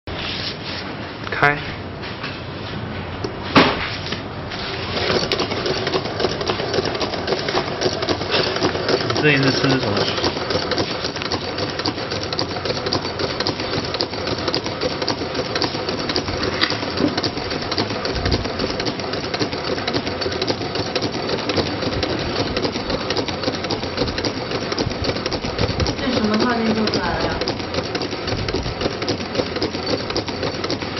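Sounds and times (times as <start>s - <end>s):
rapid mechanical clatter: 4.5s - 30.9s.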